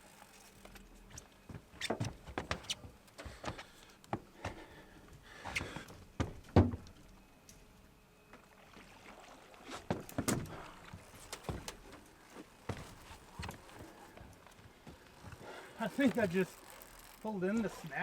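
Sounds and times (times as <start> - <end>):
knocks and thumps on boat: 6.2 - 6.8, 9.8 - 12.0.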